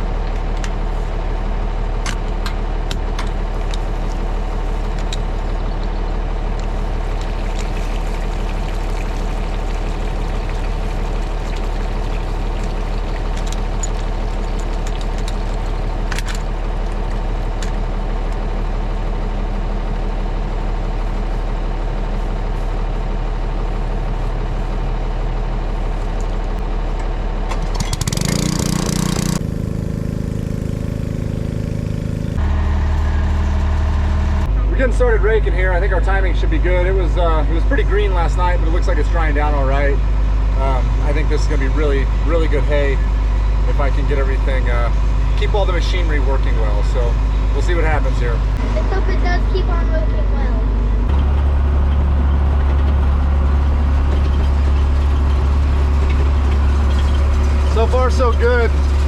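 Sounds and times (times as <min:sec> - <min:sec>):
vehicle engine running: 0:00.0 - 0:59.0.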